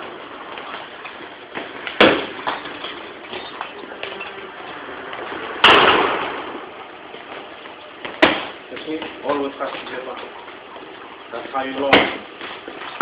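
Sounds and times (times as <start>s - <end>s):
loud punch smack: 5.6s - 6.5s.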